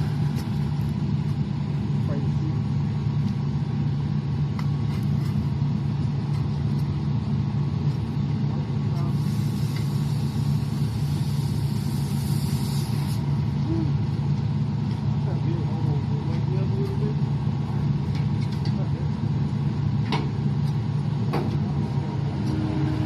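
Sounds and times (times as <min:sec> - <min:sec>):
diesel engine running: 0:00.0 - 0:23.0
air hissing: 0:09.0 - 0:13.4.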